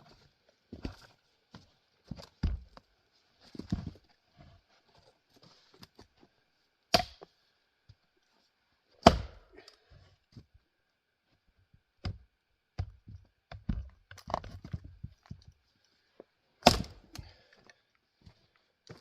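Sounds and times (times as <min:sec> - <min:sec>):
axe chopping firewood: 0:06.9 - 0:07.3, 0:09.0 - 0:09.6, 0:12.0 - 0:12.2, 0:16.6 - 0:17.3.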